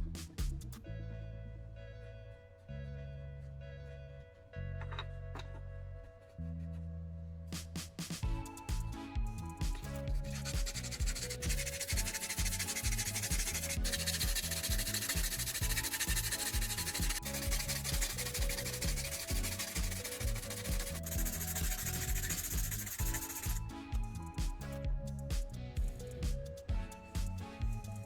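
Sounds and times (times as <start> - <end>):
background music: 0.0 - 28.0
sanding plastic surface: 10.3 - 23.6.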